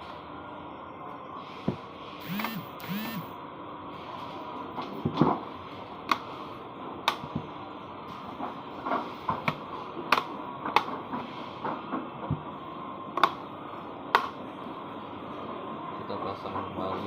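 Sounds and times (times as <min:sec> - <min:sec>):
plastic clicks and taps: 0:13.2 - 0:13.4.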